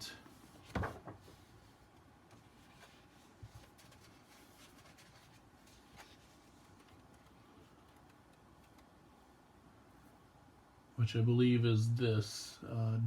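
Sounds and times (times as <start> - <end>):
faint paper rustles: 0.2 - 9.0
book rustle or thump: 0.6 - 1.4.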